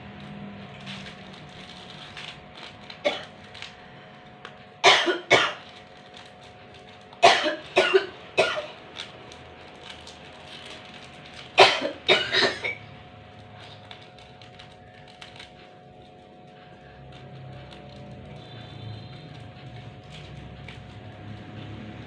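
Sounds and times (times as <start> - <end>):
woman coughing: 3.0 - 3.3, 4.8 - 5.6, 7.2 - 8.8, 11.6 - 12.8.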